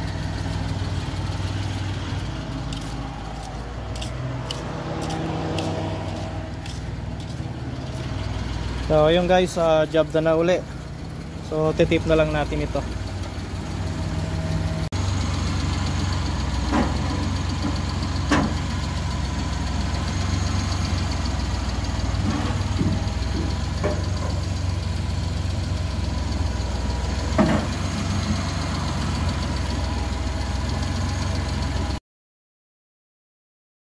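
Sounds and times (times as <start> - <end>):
car engine idling: 0.0 - 32.0.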